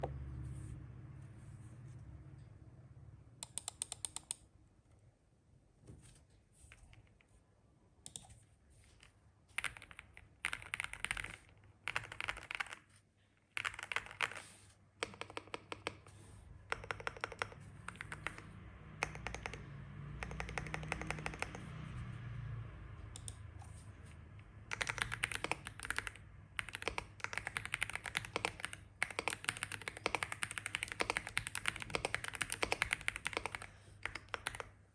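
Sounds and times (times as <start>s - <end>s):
mechanical keyboard typing: 3.4s - 4.5s, 9.5s - 12.9s, 13.5s - 14.4s, 15.0s - 21.8s, 24.7s - 34.8s.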